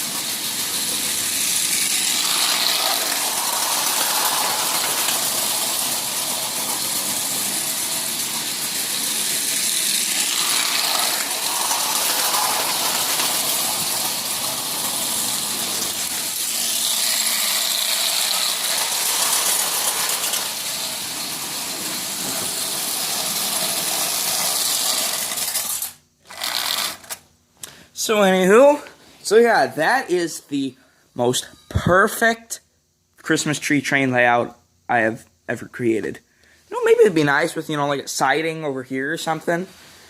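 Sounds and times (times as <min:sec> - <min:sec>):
toy train rattling on metal rails: 0:00.0 - 0:27.2.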